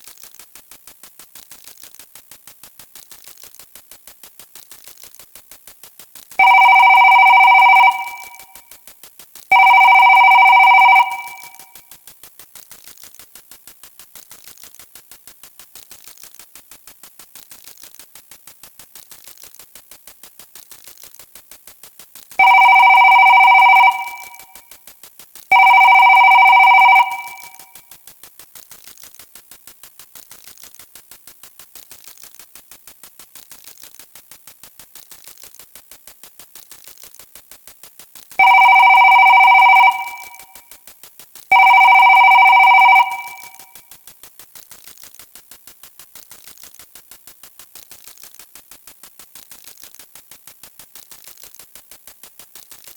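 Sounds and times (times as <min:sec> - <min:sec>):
telephone ringing: 0:06.4 - 0:08.4, 0:09.5 - 0:11.6, 0:22.4 - 0:24.6, 0:25.5 - 0:27.6, 0:38.4 - 0:40.6, 0:41.5 - 0:43.7.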